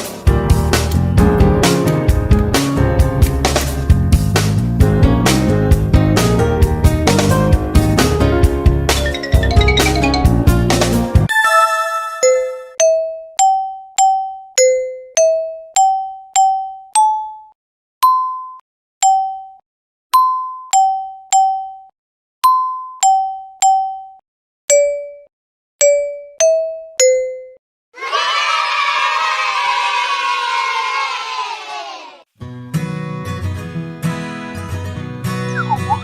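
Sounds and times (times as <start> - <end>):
glockenspiel melody: 9.0 - 17.5, 20.2 - 25.2.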